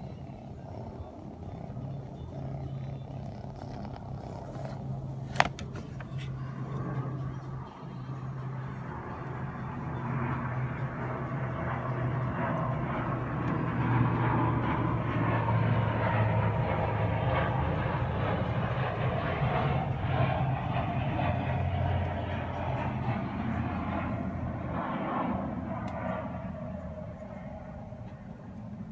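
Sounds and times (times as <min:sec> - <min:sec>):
kitten purring: 0:00.0 - 0:09.8.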